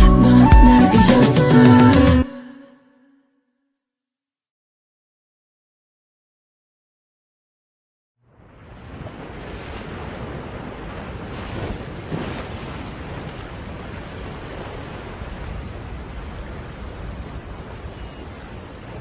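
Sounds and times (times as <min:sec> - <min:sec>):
ocean waves breaking: 0:08.3 - 0:19.0.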